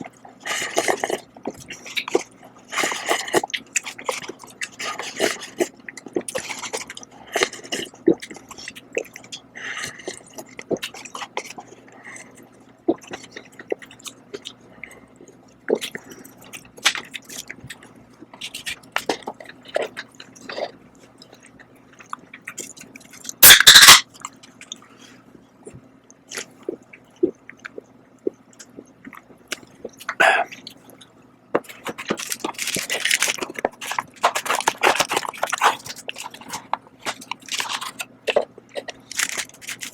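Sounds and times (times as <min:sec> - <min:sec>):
chewing noodles: 0:00.0 - 0:23.4, 0:26.3 - 0:39.9.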